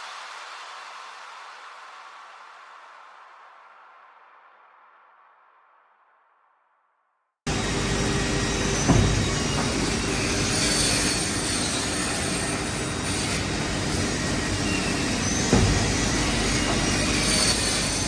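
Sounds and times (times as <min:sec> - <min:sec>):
woodworking saw running: 0:07.5 - 0:18.0
sharp knocks: 0:08.8 - 0:12.7, 0:14.0 - 0:18.0.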